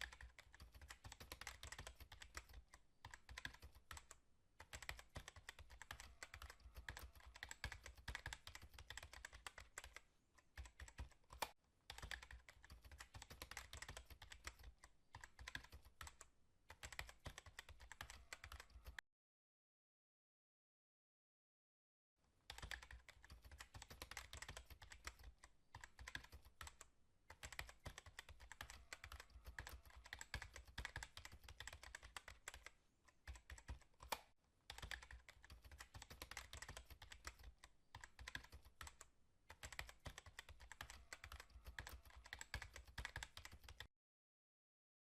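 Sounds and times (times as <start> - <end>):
keyboard typing: 0.0 - 19.0, 22.5 - 43.9.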